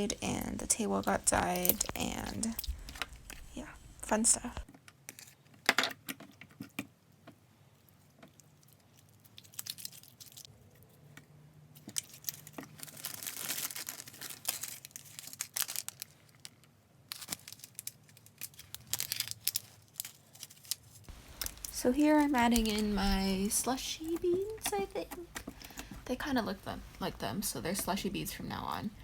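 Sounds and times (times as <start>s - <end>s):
slime crackling and tearing: 1.2s - 3.5s, 8.3s - 10.5s, 11.8s - 23.0s.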